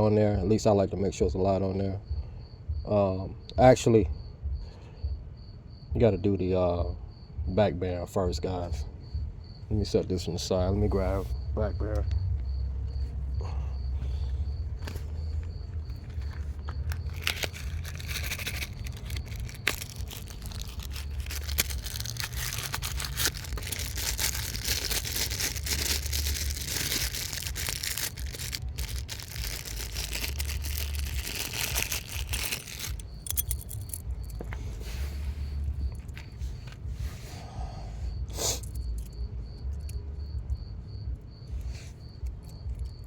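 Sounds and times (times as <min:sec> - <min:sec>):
crickets chirping: 0:00.0 - 0:43.0
hands rustling and crinkling: 0:13.9 - 0:37.2.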